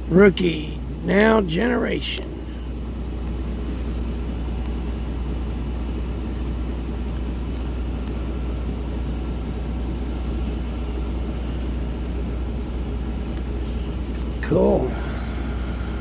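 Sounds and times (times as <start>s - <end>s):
vehicle engine idling: 2.2s - 16.0s.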